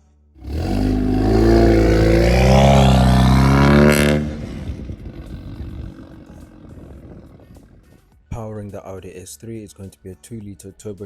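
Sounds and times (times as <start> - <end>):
car engine accelerating hard: 0.4 - 7.8
sharp exhaust crack: 0.4 - 7.9.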